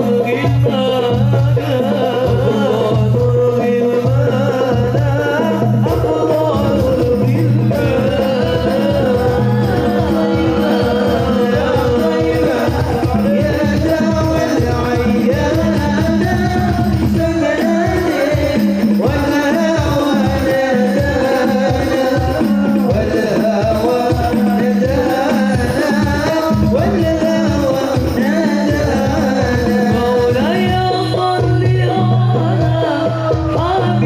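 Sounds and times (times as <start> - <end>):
person singing drawn-out melody: 0.0 - 20.4
quick hand-drum strokes: 0.0 - 34.0.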